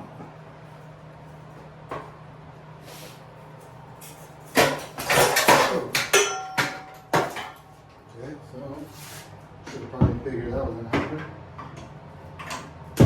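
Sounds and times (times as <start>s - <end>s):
metal parts clattering: 4.0s - 7.6s.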